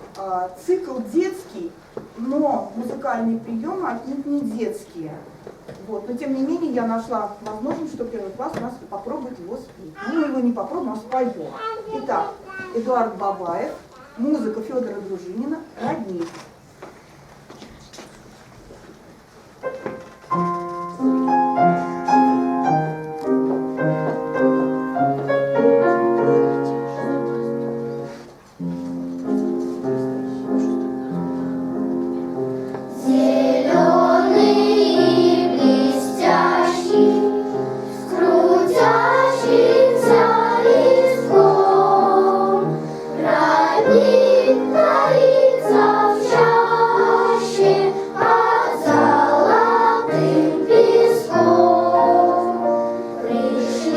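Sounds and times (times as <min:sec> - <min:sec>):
piano: 0:18.5 - 0:53.9
children's choir singing: 0:32.9 - 0:53.9.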